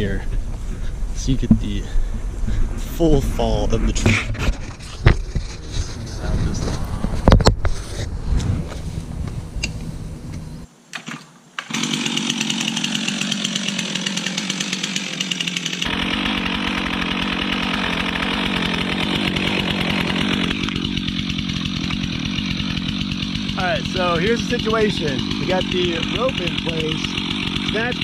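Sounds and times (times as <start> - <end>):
chainsaw cutting wood: 4.1 - 5.4, 11.0 - 28.0.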